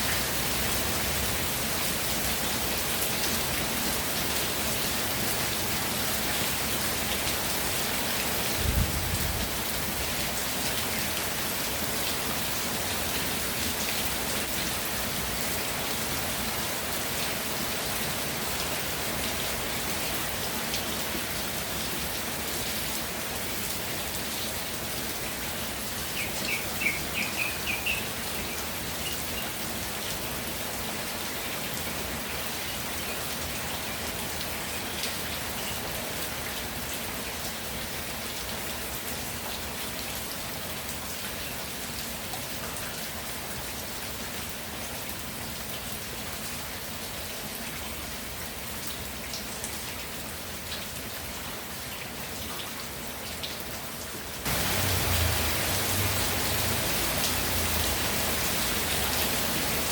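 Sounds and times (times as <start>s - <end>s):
rain pattering: 0.0s - 59.9s
high bird chirps: 26.2s - 29.2s.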